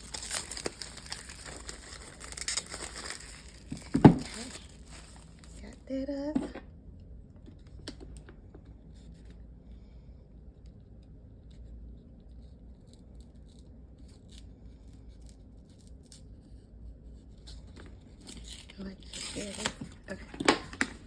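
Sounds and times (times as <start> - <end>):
plastic wrapping rustling: 0.0 - 5.8, 18.1 - 21.0
low room hum: 0.0 - 21.0.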